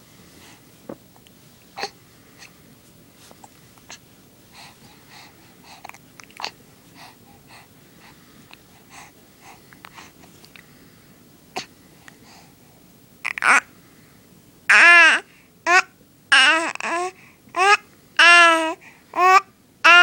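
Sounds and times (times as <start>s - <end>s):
baby hiccupping: 13.2s - 13.7s, 14.7s - 17.0s, 17.6s - 20.0s.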